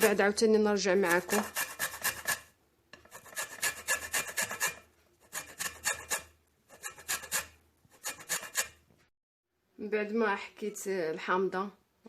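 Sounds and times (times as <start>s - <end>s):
lemon rind grating: 1.0s - 8.8s.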